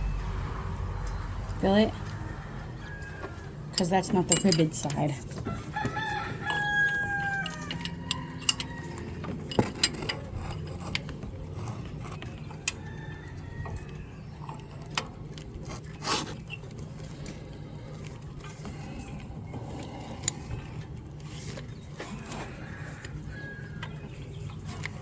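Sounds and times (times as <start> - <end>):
rooster crowing: 0.0 - 3.7, 5.4 - 9.6, 12.5 - 14.4, 22.2 - 24.2
steady low hum: 0.0 - 25.0
hand tools clinking on metal: 3.3 - 5.4, 6.4 - 11.8.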